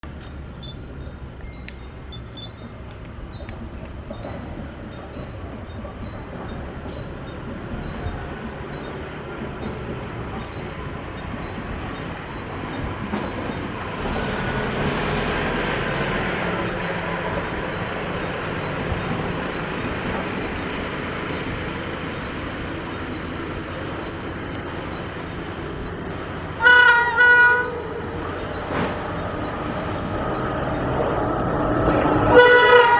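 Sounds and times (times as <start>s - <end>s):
train rumble: 0.0s - 32.9s
locomotive horn blasts: 26.6s - 27.8s, 32.1s - 32.9s.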